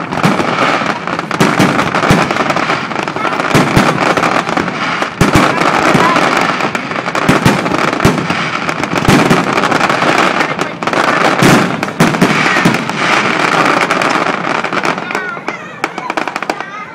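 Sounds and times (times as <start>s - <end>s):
fireworks crackling: 0.0s - 16.9s
fireworks sharp bangs: 0.0s - 16.9s.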